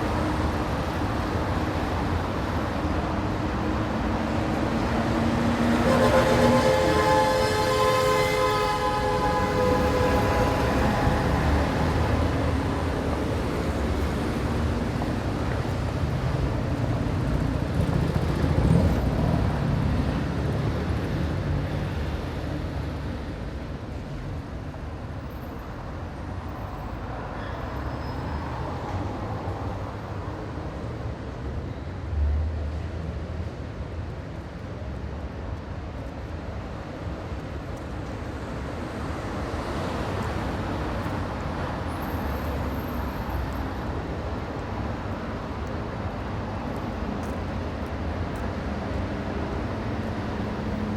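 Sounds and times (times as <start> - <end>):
street traffic rumble: 0.0 - 50.9.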